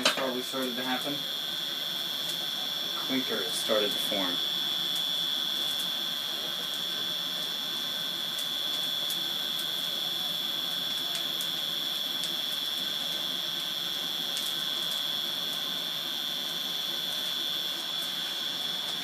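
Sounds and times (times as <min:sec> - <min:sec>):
faint fire crackles: 0:00.0 - 0:19.0
forge blower whining: 0:00.0 - 0:19.0.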